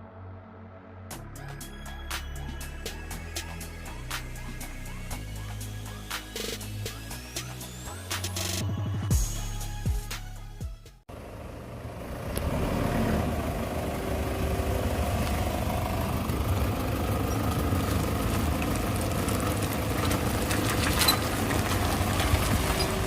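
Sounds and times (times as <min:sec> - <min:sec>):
van engine running: 0:11.1 - 0:23.0.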